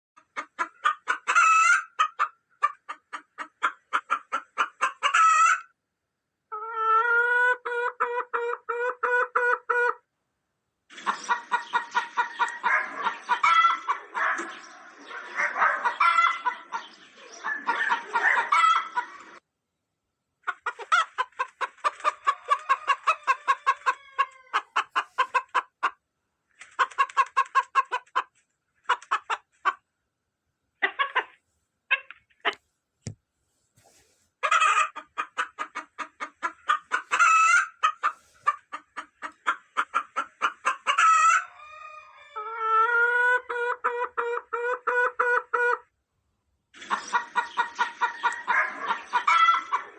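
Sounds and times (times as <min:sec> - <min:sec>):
hens clucking: 0:00.2 - 0:05.7, 0:06.5 - 0:10.0, 0:10.9 - 0:19.4, 0:20.4 - 0:26.0, 0:26.6 - 0:29.8, 0:30.8 - 0:32.6, 0:33.8 - 0:45.9, 0:46.8 - 0:49.9
long drawn-out hen call: 0:04.9 - 0:05.7, 0:06.5 - 0:10.0, 0:22.2 - 0:25.5, 0:36.8 - 0:38.6, 0:40.9 - 0:45.8.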